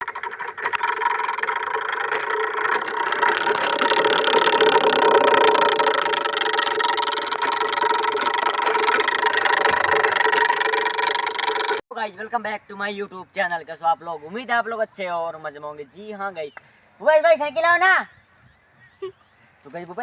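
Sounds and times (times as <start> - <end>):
plastic bottle buzzing on bicycle spokes: 0.0 - 11.8.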